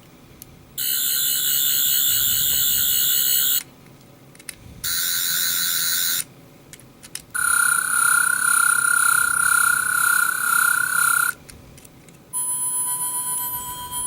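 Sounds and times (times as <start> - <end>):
toy electronic warbling buzz: 0.8 - 3.6, 4.9 - 6.2, 7.4 - 11.4, 12.4 - 14.0
high whine: 7.4 - 11.4, 12.3 - 14.0.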